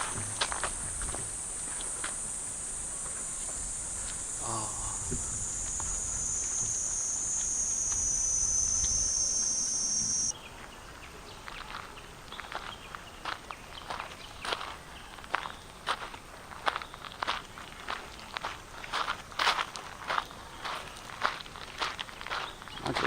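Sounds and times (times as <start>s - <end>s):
cicadas buzzing: 0.0s - 10.4s.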